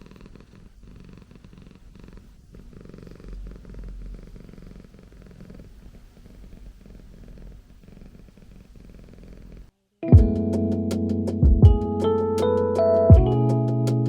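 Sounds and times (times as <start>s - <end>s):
cat purring: 0.0s - 9.7s.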